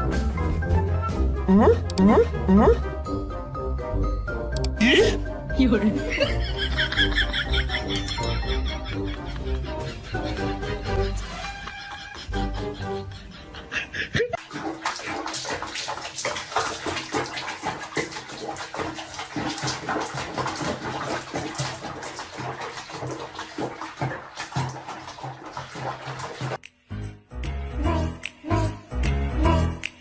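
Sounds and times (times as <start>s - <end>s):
water running and splashing: 14.4s - 26.6s.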